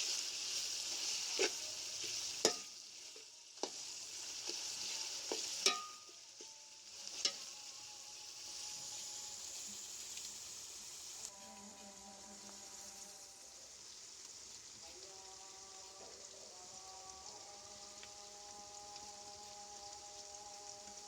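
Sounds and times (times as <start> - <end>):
vegetables sizzling in oil: 0.0 - 21.0
spoon knocking against pan: 2.4 - 2.7, 5.3 - 6.1.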